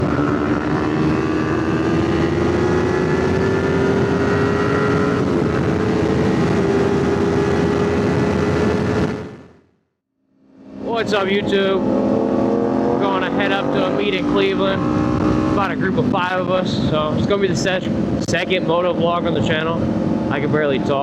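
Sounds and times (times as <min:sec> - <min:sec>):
motorcycle engine running: 0:00.0 - 0:09.6
rushing wind: 0:00.0 - 0:09.6, 0:10.6 - 0:21.0
road noise: 0:00.0 - 0:09.7, 0:10.4 - 0:21.0.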